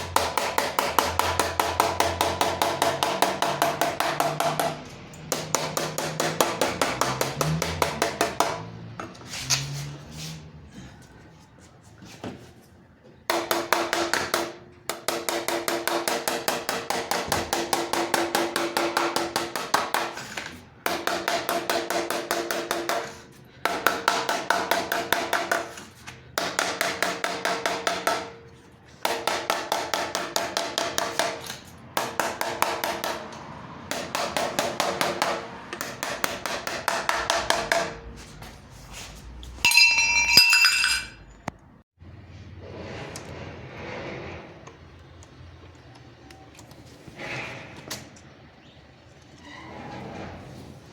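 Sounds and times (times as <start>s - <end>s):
hammer tapping on metal: 0.1s - 8.6s, 39.7s - 41.2s.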